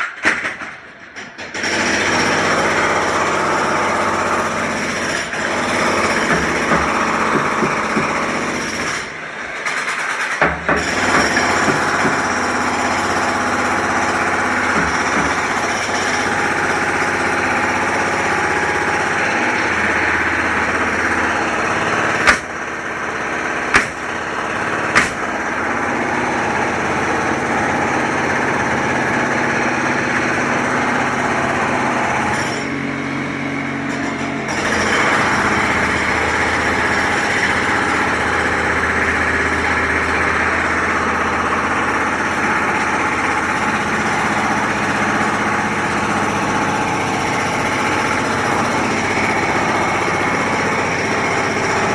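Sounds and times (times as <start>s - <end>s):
sharp metallic bangs: 0.0s - 25.8s
construction machinery engine hum: 0.0s - 51.9s.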